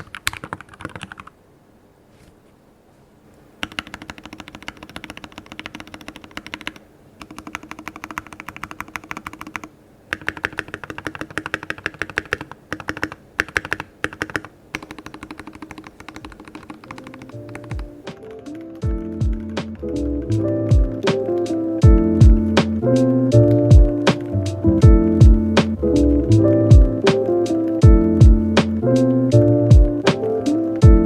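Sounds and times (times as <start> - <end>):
fast mechanical keyboard typing: 0.0 - 1.3, 3.6 - 19.7, 20.7 - 22.6
music: 17.0 - 31.0.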